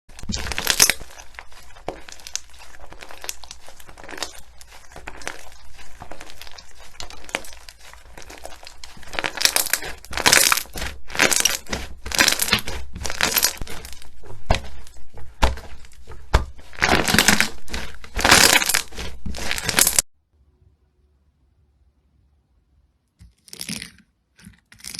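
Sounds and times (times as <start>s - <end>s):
slime crackling and squelching: 0.1s - 20.1s.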